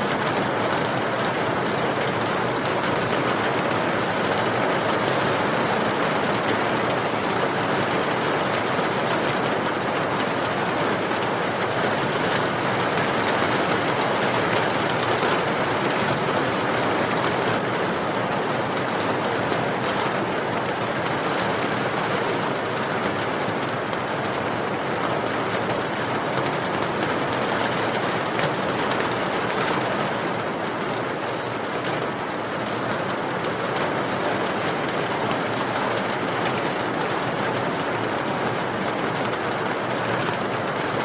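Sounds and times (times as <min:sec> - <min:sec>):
steady rain: 0:00.0 - 0:41.0.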